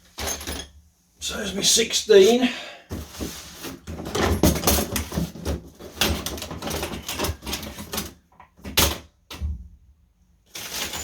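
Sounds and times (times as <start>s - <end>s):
tools and drill bits clattering: 0.0s - 0.8s, 3.1s - 9.0s, 10.5s - 11.0s.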